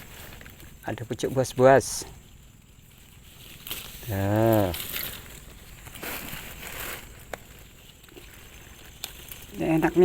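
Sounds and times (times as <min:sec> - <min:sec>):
leaves and plant stems rustling: 0:00.0 - 0:10.0.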